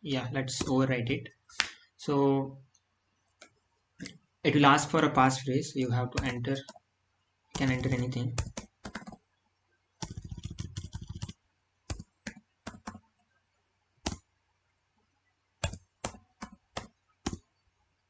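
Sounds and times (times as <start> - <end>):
typing on computer keyboard: 7.5 - 9.2, 10.0 - 13.0, 14.0 - 14.2, 15.6 - 17.4.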